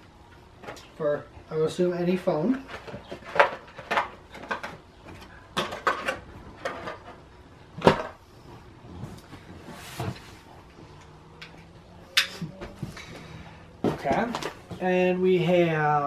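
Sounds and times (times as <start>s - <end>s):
boxes and packaging knocking: 13.8s - 14.9s.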